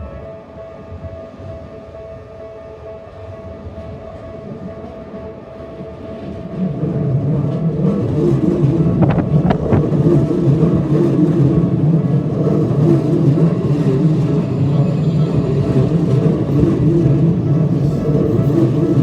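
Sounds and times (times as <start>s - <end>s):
train wheels rumbling: 0.0s - 19.0s
high wheel squeals: 13.5s - 19.0s.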